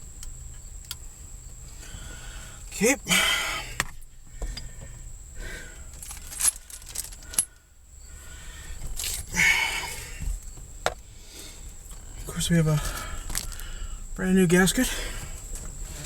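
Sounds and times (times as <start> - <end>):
small metal parts clinking: 5.9 - 7.6, 8.8 - 9.3, 12.9 - 13.7.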